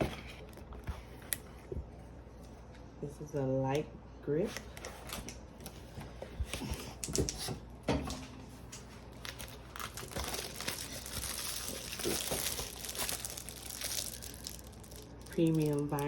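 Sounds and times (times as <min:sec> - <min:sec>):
plastic packaging crinkling: 0:08.8 - 0:16.0.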